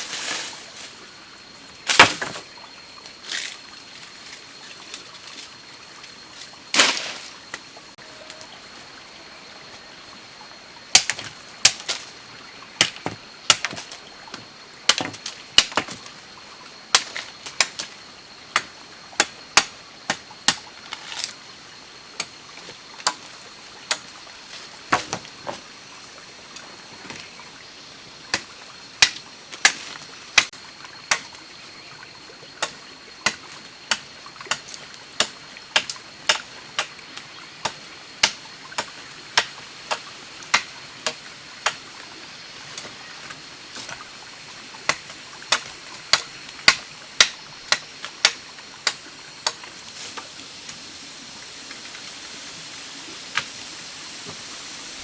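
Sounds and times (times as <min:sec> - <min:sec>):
steady hiss: 0:00.0 - 0:55.0.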